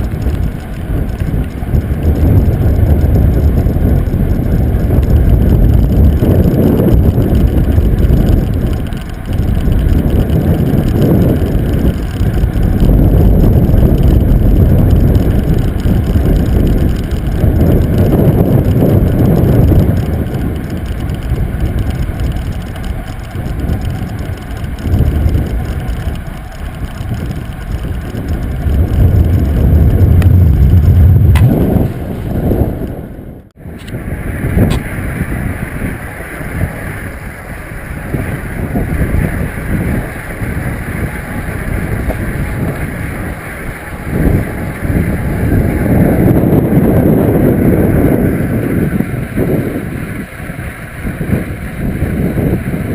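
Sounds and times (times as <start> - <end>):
wind buffeting microphone: 0.0 - 52.9.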